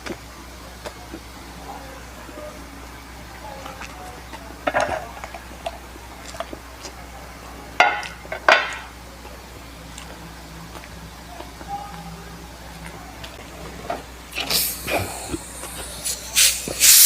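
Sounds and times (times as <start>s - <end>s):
mouth eating noises: 9.2s - 17.0s.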